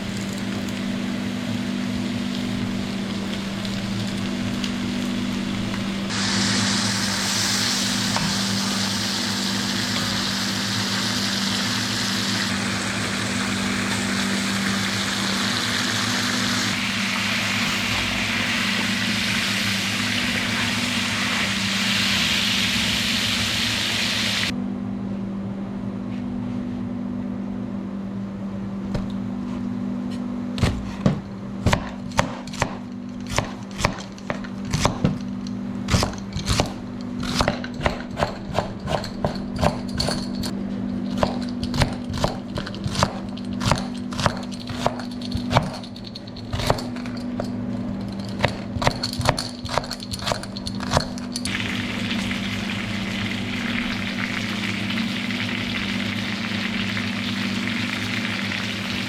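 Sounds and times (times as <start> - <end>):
loud hiss: 6.1 - 24.5
knife chopping on wooden board: 30.6 - 35.2, 35.9 - 39.9, 41.1 - 45.8.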